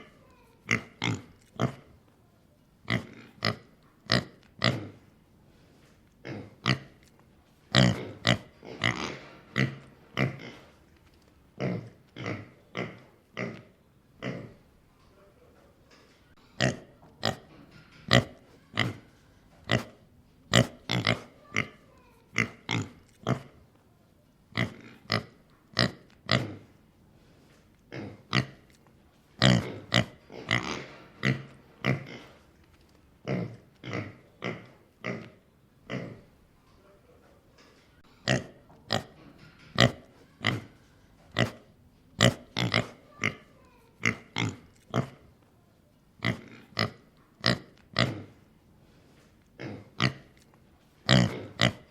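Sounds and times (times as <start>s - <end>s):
pig snorting: 7.7s - 10.7s, 29.4s - 32.4s, 42.2s - 43.4s, 51.0s - 51.9s.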